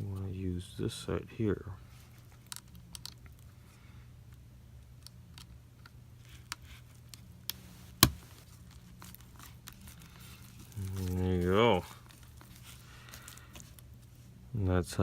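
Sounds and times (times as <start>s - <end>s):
faint low hum: 0.0s - 15.0s.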